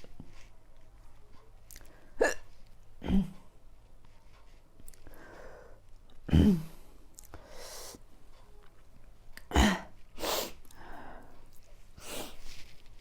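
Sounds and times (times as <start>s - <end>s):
woman hiccuping: 2.2s - 3.4s
noisy breaths: 5.0s - 6.0s, 6.6s - 8.1s, 10.1s - 12.8s.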